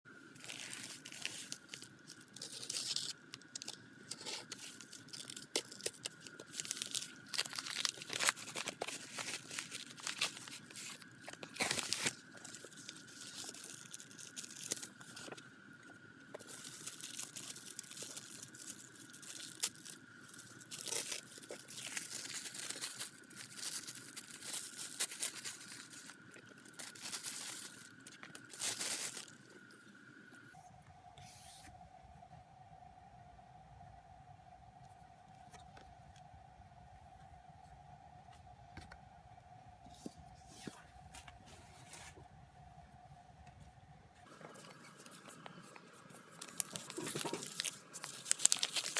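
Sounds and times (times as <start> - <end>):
packaging tearing and crinkling: 0.4 - 15.4, 16.4 - 29.6, 44.5 - 48.9.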